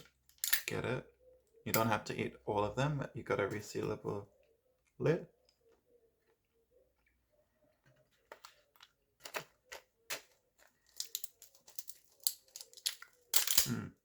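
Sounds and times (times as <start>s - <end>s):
plastic packaging rustling: 8.0s - 13.3s
plastic packaging crinkling: 8.2s - 13.3s.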